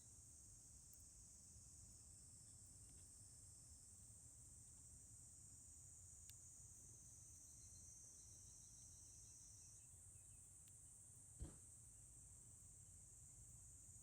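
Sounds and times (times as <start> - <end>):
faint chorus of insects: 0.0 - 14.0.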